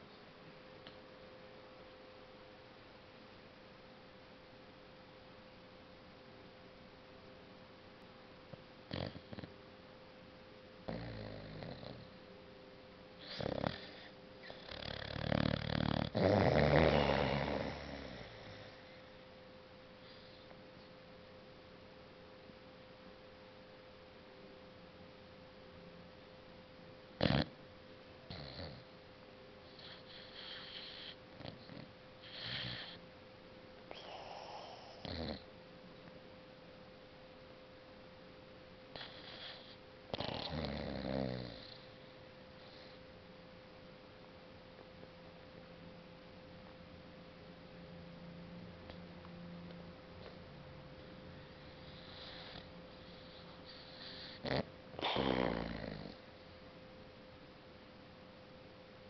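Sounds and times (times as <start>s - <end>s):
puppy snoring: 8.8s - 9.6s, 10.8s - 12.2s, 13.2s - 19.2s, 20.0s - 20.5s, 27.2s - 27.6s, 28.3s - 28.9s, 29.6s - 33.0s, 33.9s - 35.5s, 38.9s - 43.0s, 50.2s - 50.5s, 51.3s - 56.6s.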